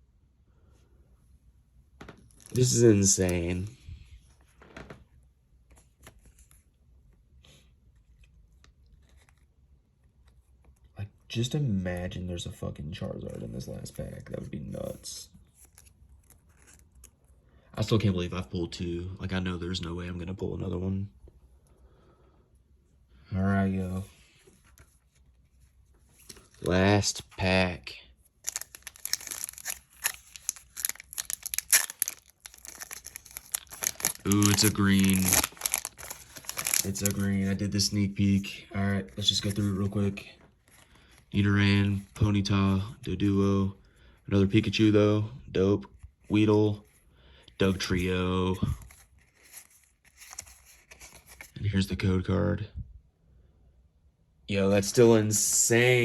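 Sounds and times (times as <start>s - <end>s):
trading cards rustling: 2.1s - 3.9s, 13.2s - 17.3s, 28.4s - 42.2s, 47.6s - 51.6s
foil wrapper tearing and crinkling: 28.4s - 37.4s.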